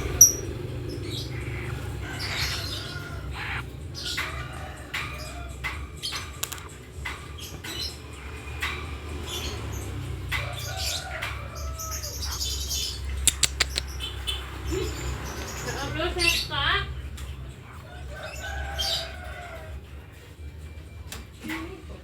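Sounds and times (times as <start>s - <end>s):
bird squeaking and chirping: 0.0s - 21.5s
sharp clicks: 5.0s - 7.6s, 13.1s - 14.1s.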